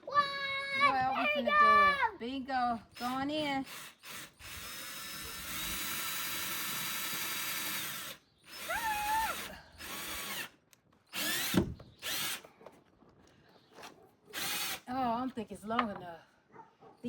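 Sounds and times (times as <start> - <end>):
power drill driving into wood: 3.0 - 10.5, 11.1 - 12.4, 14.3 - 14.8.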